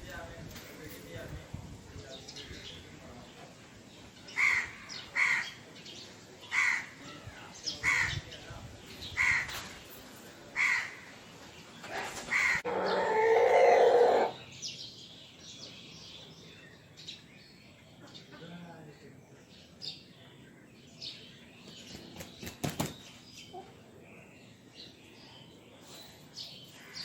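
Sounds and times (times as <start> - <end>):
crows cawing: 4.4 - 5.6, 6.5 - 7.0, 7.8 - 8.2, 9.2 - 9.6, 10.6 - 11.1, 12.3 - 14.4
long crow call: 4.4 - 5.6, 6.5 - 8.2, 10.6 - 11.1.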